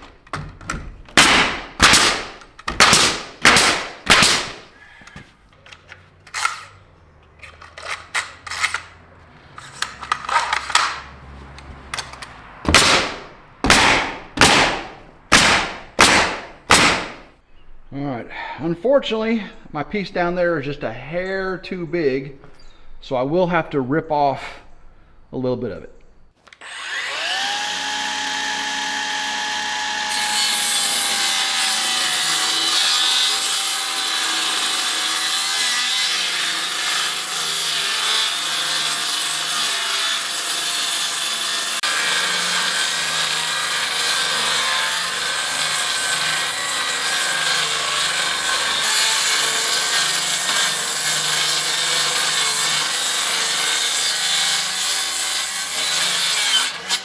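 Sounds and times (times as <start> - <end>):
electric saw cutting wood: 1.2 - 4.7, 26.5 - 57.0.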